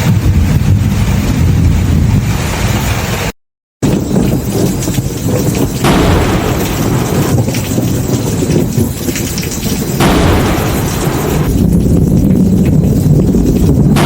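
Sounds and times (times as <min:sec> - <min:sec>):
low rumble of thunder: 0:00.0 - 0:03.2, 0:03.8 - 0:14.0
heavy rain hissing: 0:03.9 - 0:14.0.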